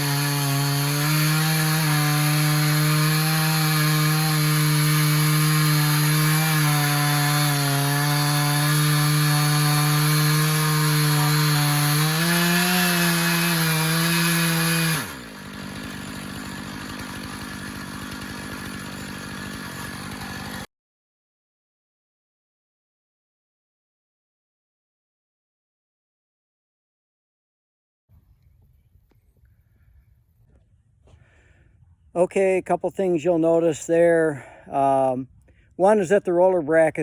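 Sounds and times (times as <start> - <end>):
chainsaw cutting log: 0.0 - 20.7
chainsaw idling: 0.0 - 20.7.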